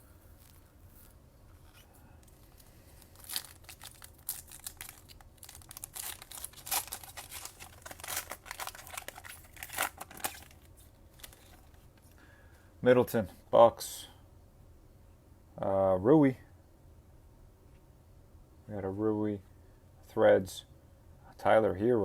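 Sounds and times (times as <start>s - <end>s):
plastic wrapper tearing and crinkling: 1.6s - 11.9s.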